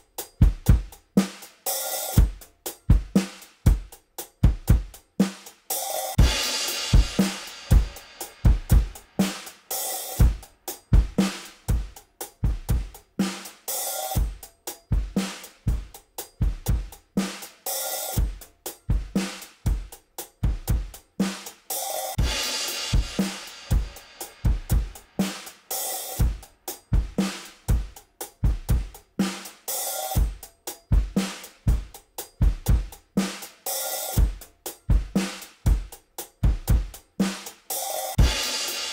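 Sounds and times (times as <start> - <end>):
drum kit playing groove: 0.0 - 38.9
cymbal ringing: 5.8 - 11.5, 21.8 - 26.8.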